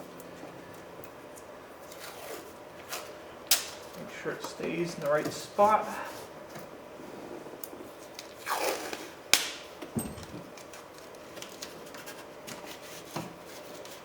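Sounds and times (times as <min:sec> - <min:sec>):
soft knock: 0:10.0 - 0:10.5.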